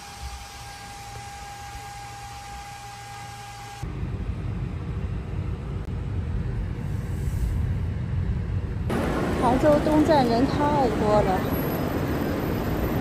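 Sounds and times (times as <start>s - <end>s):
loud low rumble: 3.8s - 13.0s.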